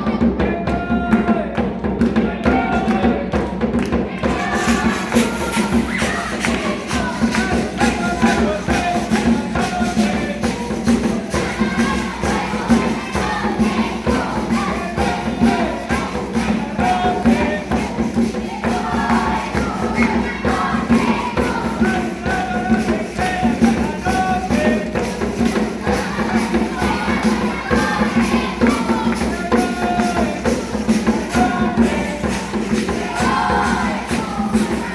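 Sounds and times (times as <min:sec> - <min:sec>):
singing voices: 0:00.0 - 0:34.9
steady percussive beat: 0:00.0 - 0:34.9.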